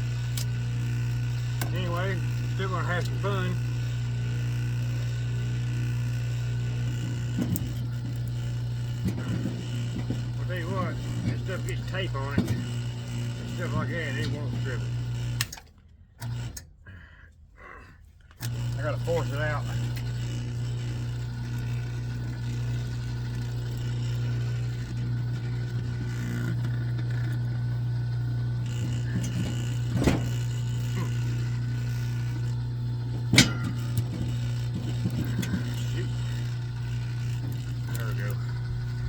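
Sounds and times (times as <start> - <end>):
sharp knocks of wire stripper: 28.6 - 36.5.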